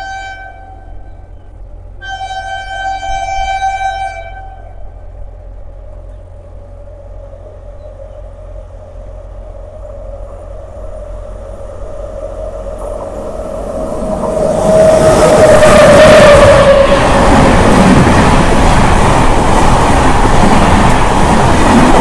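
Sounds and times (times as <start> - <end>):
train horn long note: 0.0 - 1.3, 2.0 - 5.0
train rushing: 0.0 - 22.0.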